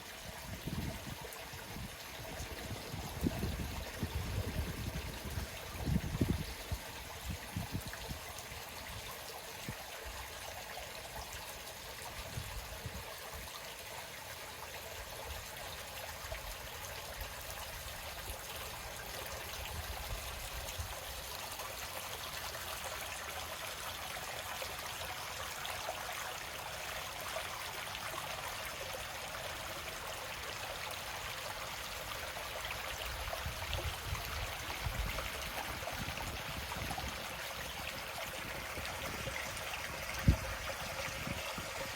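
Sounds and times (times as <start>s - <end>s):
water trickling and splashing: 0.0s - 41.9s.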